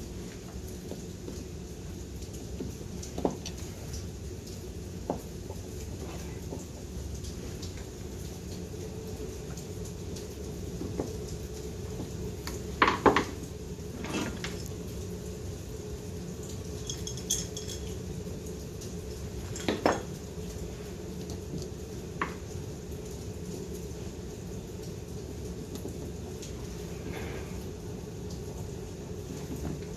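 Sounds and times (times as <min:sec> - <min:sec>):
steady low hum: 0:00.0 - 0:29.9
metal parts clinking on workbench: 0:16.8 - 0:17.9.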